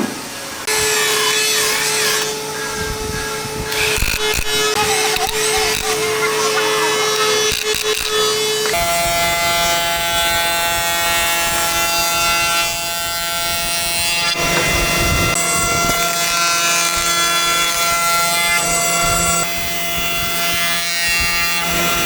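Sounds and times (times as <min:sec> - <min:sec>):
electric power tool cutting wood: 0:00.0 - 0:22.0.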